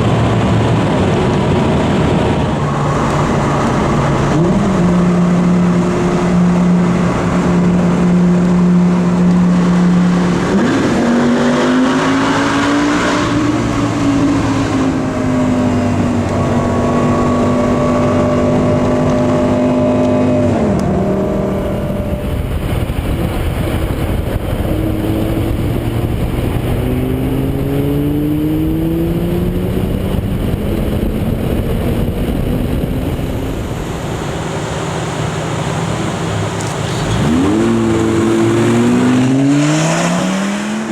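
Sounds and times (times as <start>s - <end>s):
car engine accelerating: 0.0s - 40.9s.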